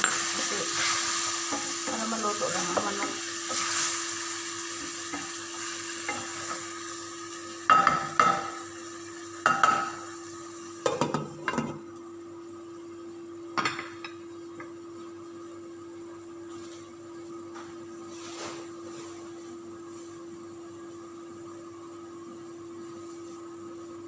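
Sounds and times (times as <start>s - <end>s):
chicken sizzling in a pan: 0.0s - 11.7s.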